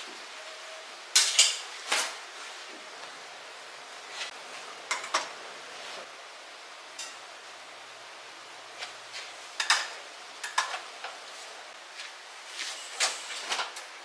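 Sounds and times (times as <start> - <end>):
kitchenware clinking and clattering: 1.1 - 2.2, 4.9 - 5.4, 9.6 - 11.2.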